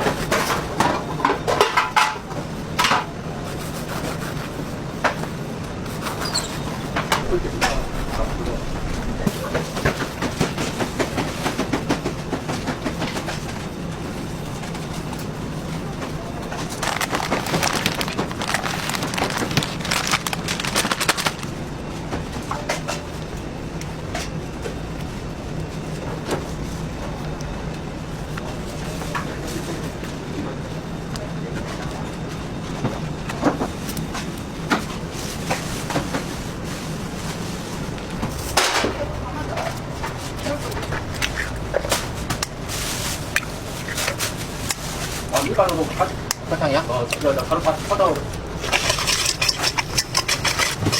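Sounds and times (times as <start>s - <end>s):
machinery hum: 0.0s - 50.9s
machinery clattering and rattling: 6.0s - 23.1s, 38.0s - 50.9s.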